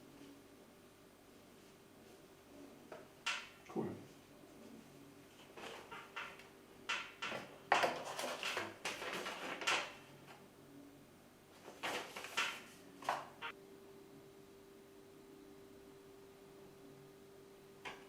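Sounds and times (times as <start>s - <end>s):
packaging rustling: 7.7s - 10.0s, 11.6s - 13.4s.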